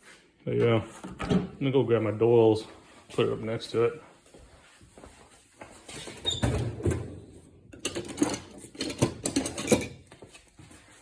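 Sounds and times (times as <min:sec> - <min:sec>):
metal hand tools clicking and knocking: 0:07.8 - 0:09.9.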